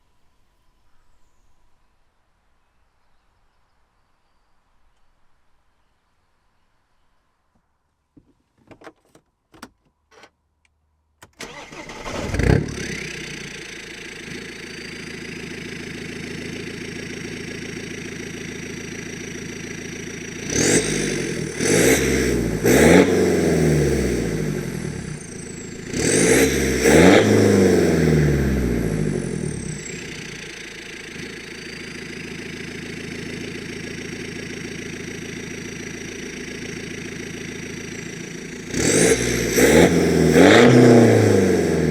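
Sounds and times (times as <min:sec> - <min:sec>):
diesel engine starting and idling: 0:11.3 - 0:41.9
engine revving: 0:11.4 - 0:41.9.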